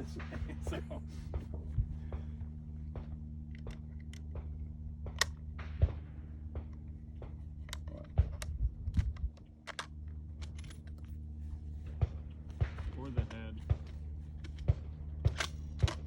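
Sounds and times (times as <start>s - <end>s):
steady low hum: 0.0s - 16.0s
sharp clicks and light knocks: 3.0s - 11.1s.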